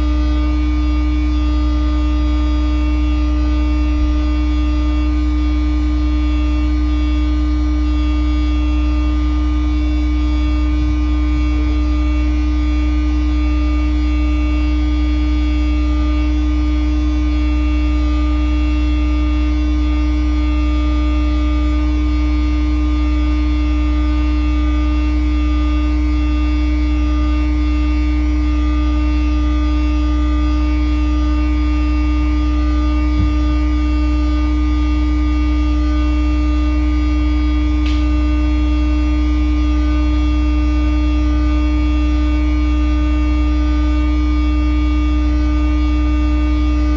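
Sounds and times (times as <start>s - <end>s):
pump truck deep hum: 0.0s - 23.6s, 26.2s - 43.5s, 44.1s - 46.9s
constant higher tone: 0.0s - 46.9s.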